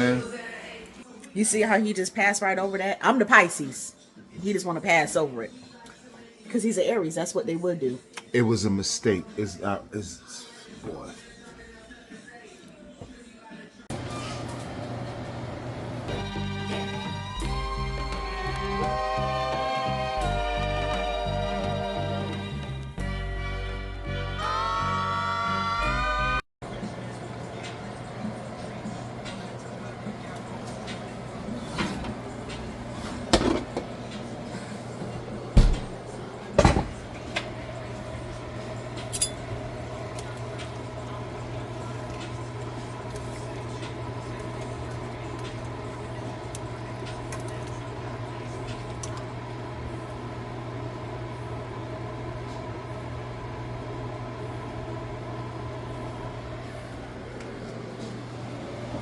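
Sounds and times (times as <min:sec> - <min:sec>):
steady kitchen hum: 0:00.0 - 0:59.0
pots and pans clanking: 0:33.2 - 0:33.9.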